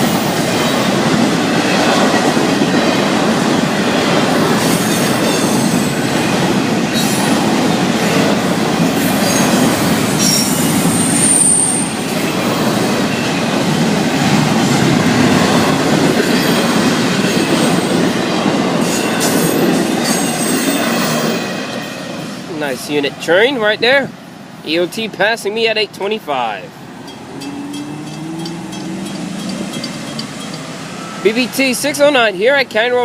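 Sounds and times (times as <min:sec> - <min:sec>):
train wheels rumbling on rail: 0:00.0 - 0:24.6, 0:26.7 - 0:33.0
wheel squeal: 0:09.0 - 0:12.1, 0:27.1 - 0:31.3.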